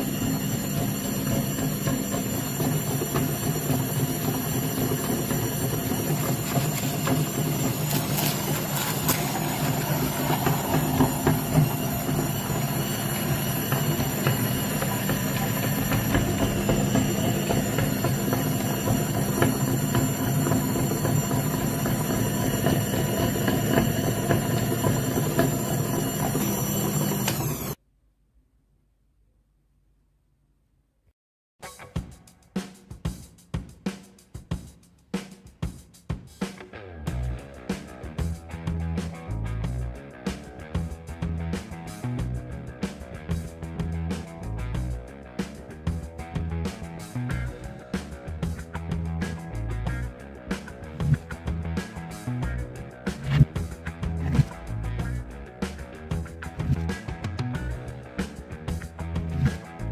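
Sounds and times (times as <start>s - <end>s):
electric meat grinder motor humming: 0.0s - 27.8s.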